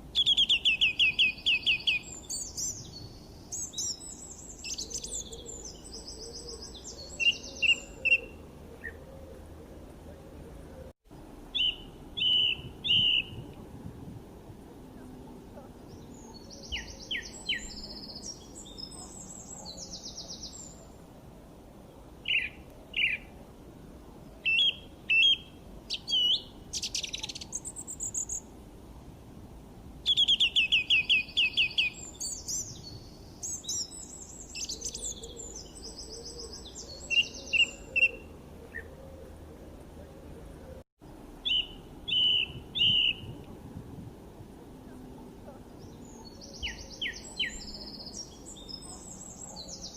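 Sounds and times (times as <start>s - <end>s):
low background noise: 0.0s - 49.9s
songbirds chirping and singing: 0.2s - 10.9s, 11.6s - 13.5s, 15.0s - 20.9s, 30.1s - 40.8s, 44.8s - 49.9s.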